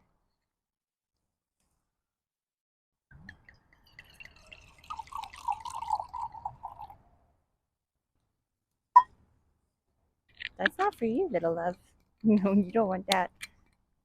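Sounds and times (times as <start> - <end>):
wine pouring into glass: 3.4 - 7.0.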